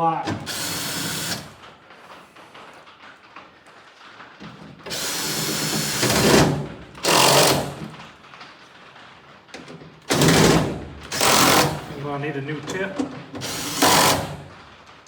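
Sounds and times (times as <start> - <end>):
power drill driving screws: 0.2 - 1.6, 4.8 - 8.1, 10.1 - 12.0, 12.8 - 14.6.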